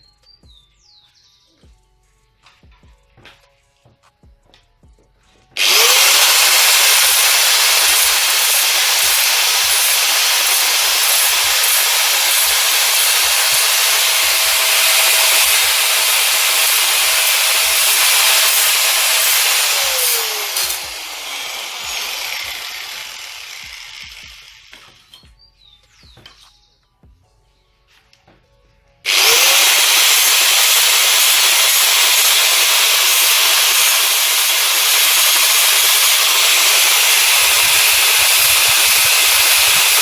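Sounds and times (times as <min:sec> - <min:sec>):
grinder motor winding down: 0:05.6 - 0:25.0, 0:29.1 - 0:40.0
angle grinder grinding metal: 0:05.6 - 0:25.2, 0:29.1 - 0:40.0.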